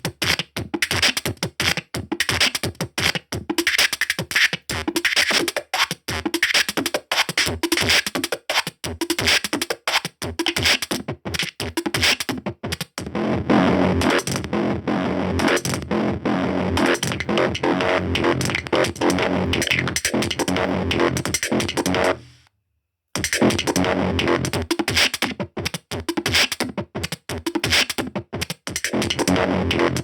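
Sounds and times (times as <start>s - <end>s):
electronic music with stuttering beat: 12.8s - 22.4s, 23.2s - 30.0s.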